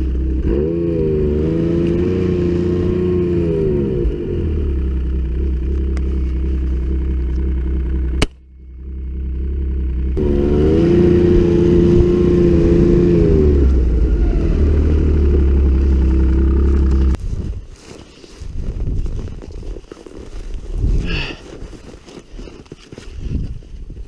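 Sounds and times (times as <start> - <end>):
snowmobile engine revving: 0.0 - 8.2, 8.8 - 17.2.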